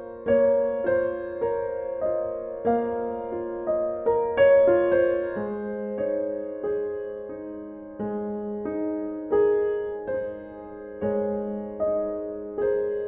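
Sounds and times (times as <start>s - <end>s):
soft piano music: 0.0s - 13.0s.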